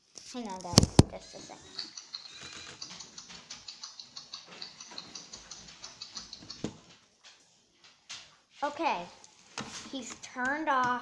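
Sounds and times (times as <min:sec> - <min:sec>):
toy bird clicking and chirping: 0:00.5 - 0:07.0.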